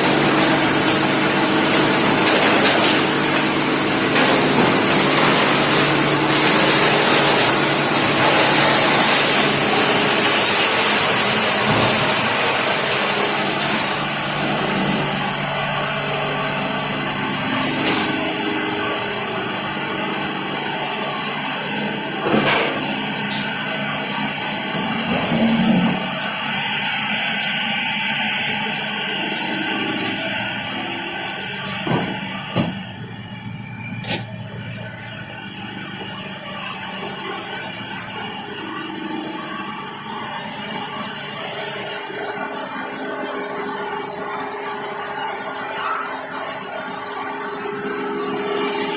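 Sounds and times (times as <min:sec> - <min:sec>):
machinery running with hiss: 0:00.0 - 0:48.9.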